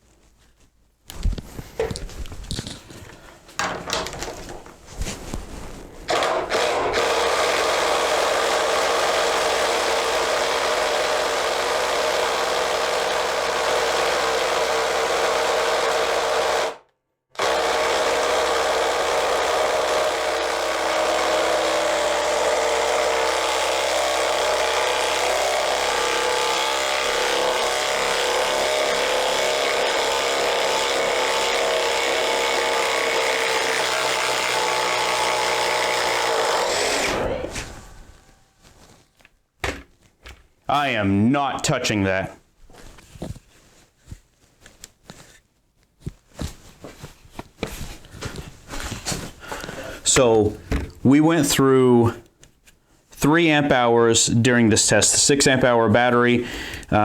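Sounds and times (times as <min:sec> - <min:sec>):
clattering knocks: 0:03.5 - 0:04.8
impact driver hammering: 0:06.1 - 0:16.8, 0:17.4 - 0:37.6.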